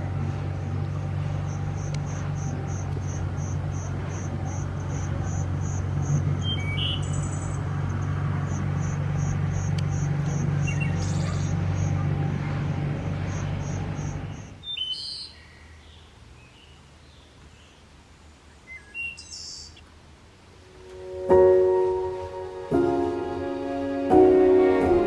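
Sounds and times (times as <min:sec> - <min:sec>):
low hum: 0:00.0 - 0:14.6, 0:20.6 - 0:25.0
cricket chirping: 0:00.6 - 0:12.0, 0:13.2 - 0:14.6
higher chirps: 0:20.6 - 0:25.0.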